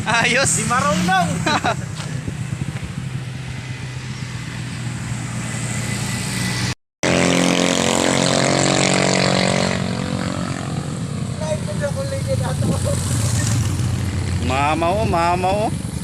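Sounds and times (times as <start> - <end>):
wind noise: 0.0 - 6.6, 12.2 - 14.5
motorcycle engine running: 0.0 - 6.7, 10.6 - 16.0.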